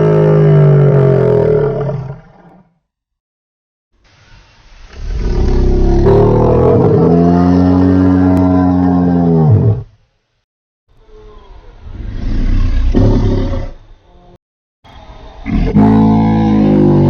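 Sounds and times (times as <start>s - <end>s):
dinosaur roar: 0.0s - 2.7s, 5.0s - 9.9s, 11.2s - 13.8s, 15.4s - 17.0s.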